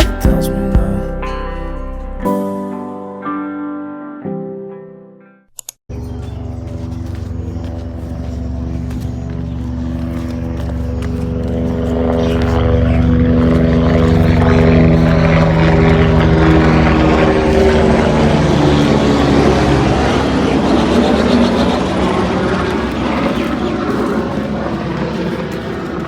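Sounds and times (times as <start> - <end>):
motor engine drone: 5.9 - 26.0.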